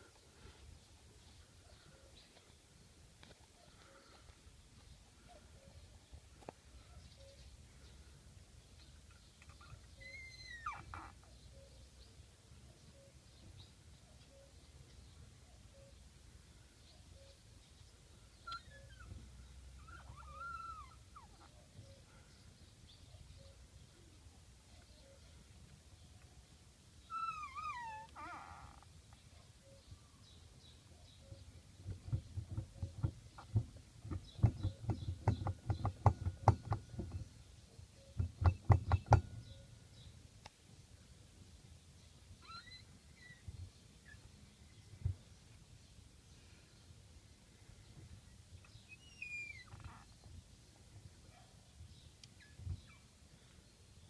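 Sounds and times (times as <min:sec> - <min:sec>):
driveshaft creaking and knocking: 0:31.9 - 0:37.3, 0:38.2 - 0:39.4.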